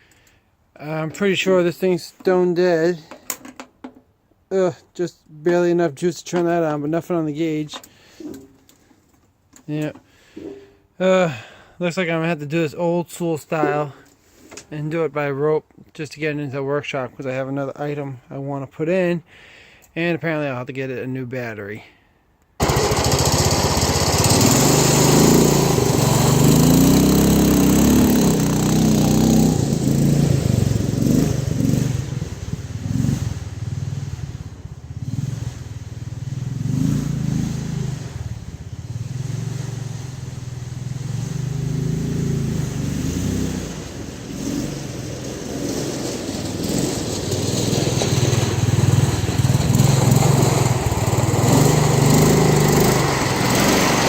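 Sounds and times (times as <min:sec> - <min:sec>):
small petrol engine running: 0:22.6 - 0:54.0.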